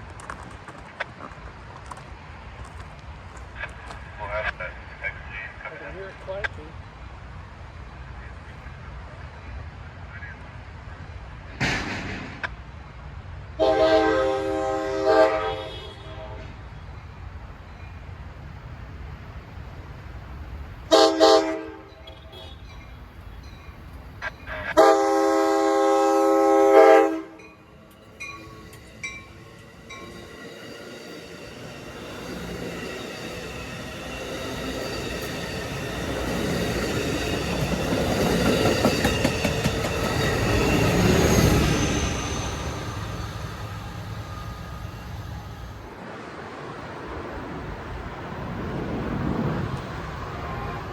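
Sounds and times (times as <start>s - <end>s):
wheels clicking over rail joints: 0.0s - 4.0s, 27.3s - 43.4s
train rumble: 0.0s - 50.9s
locomotive air horn blasts: 13.6s - 16.6s, 20.9s - 22.7s, 24.8s - 27.4s.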